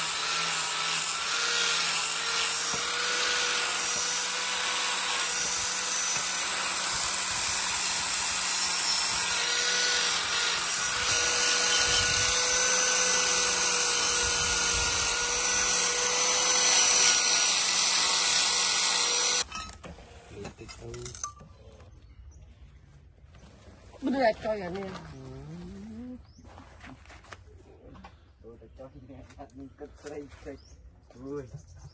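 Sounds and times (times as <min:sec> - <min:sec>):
electric grinder grinding steel: 0:00.0 - 0:19.8.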